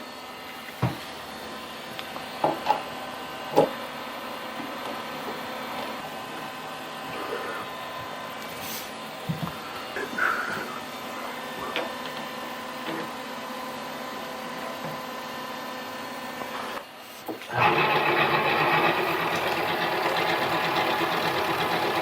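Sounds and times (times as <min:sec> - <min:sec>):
lathe motor whine: 0:17.4 - 0:22.0.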